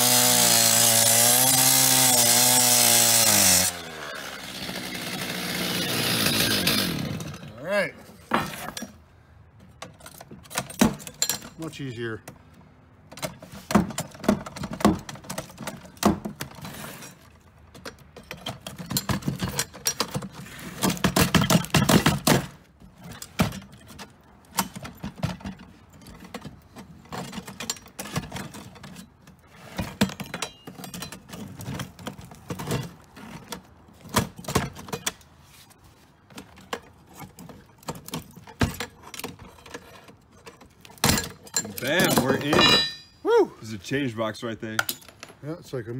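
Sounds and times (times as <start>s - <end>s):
metal clanking and scraping: 6.4s - 12.0s, 13.1s - 43.2s.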